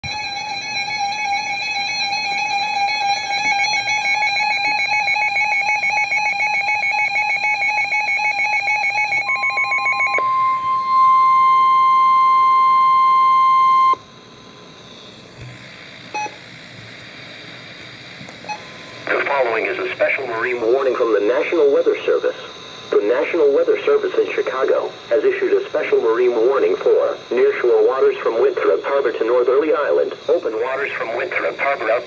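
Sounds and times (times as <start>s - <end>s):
pulsing electronic buzz: 0.0s - 32.0s
faint radio hiss: 18.6s - 32.0s.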